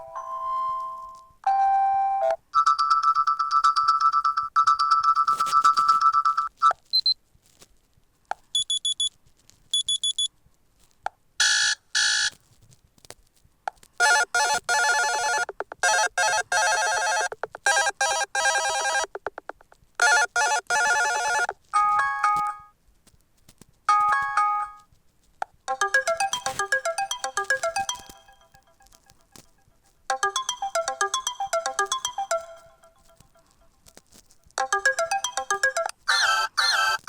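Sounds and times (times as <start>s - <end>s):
electronic ringtone melodies: 0.0s - 6.5s, 14.0s - 19.3s, 20.0s - 22.7s, 23.9s - 24.8s, 25.7s - 29.4s, 30.1s - 33.6s, 34.6s - 37.0s
phone ringtone beep: 0.0s - 6.5s, 11.4s - 12.3s, 14.0s - 19.2s, 20.0s - 22.7s, 25.7s - 29.0s, 30.1s - 33.5s, 34.6s - 37.0s.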